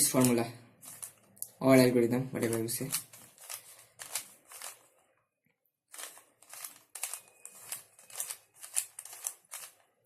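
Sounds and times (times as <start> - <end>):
puzzle cube plastic clicks: 0.0 - 1.4, 2.4 - 4.9, 5.9 - 9.9.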